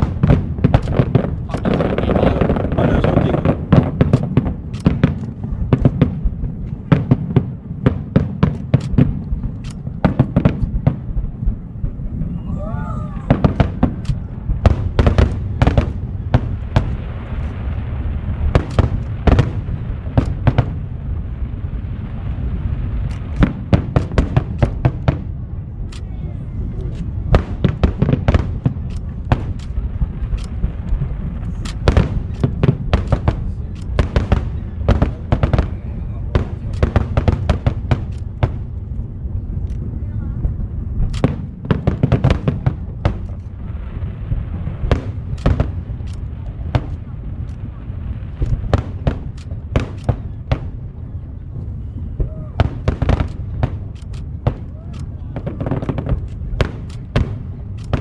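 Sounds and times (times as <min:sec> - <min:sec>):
fireworks bangs: 0:00.0 - 0:26.0, 0:26.6 - 0:58.0
low rumble: 0:09.1 - 0:20.1, 0:28.6 - 0:58.0
fireworks shells bursting: 0:48.3 - 0:50.8.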